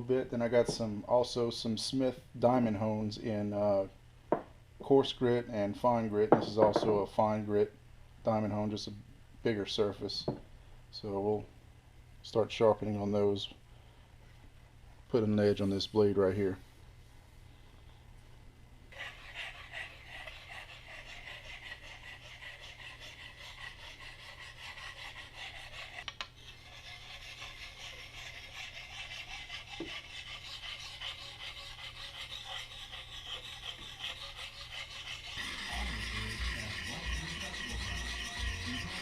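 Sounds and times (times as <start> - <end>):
hatchet scraping on sharpening stone: 19.0 - 39.0.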